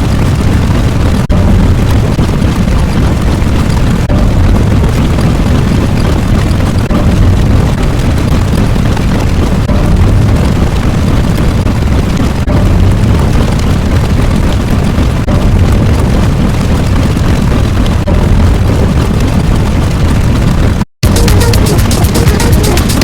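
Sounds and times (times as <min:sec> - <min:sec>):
deep rumbling: 0:00.0 - 0:23.0.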